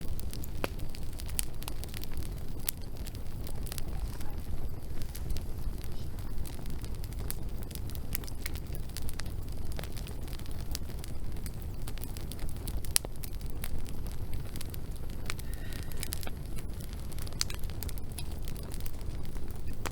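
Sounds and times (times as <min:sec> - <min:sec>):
campfire flames rumbling: 0:00.0 - 0:19.9
wood crackling and popping: 0:00.0 - 0:19.9.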